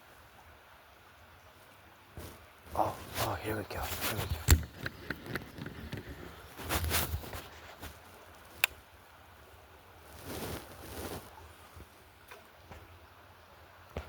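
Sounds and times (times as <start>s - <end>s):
rustling and handling noises: 2.2s - 8.8s, 10.0s - 11.9s.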